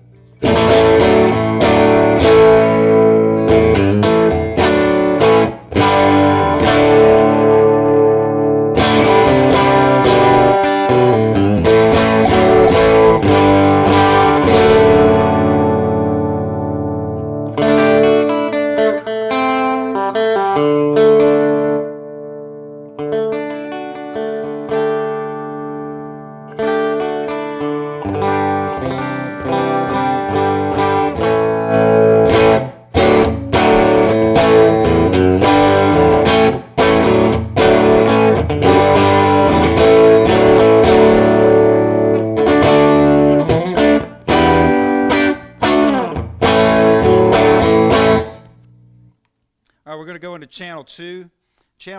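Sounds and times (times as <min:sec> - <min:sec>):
electric guitar chords: 0:00.0 - 0:49.2.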